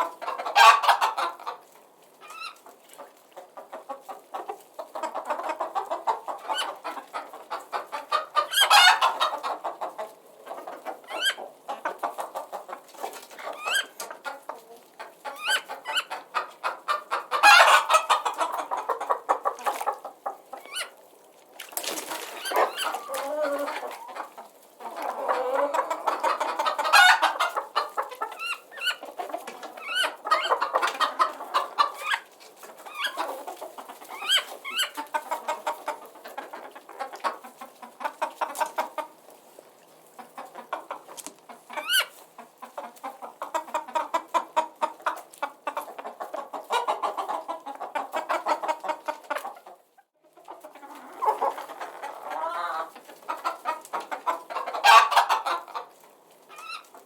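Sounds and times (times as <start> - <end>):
chickens clucking: 0.0 - 57.0
short high-pitched chicken calls: 56.5 - 57.0.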